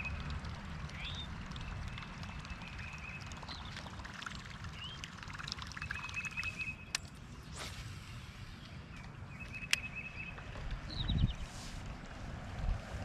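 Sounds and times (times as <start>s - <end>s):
songbirds calling: 0.0s - 7.6s, 8.3s - 11.9s
creek water flowing: 0.0s - 8.8s.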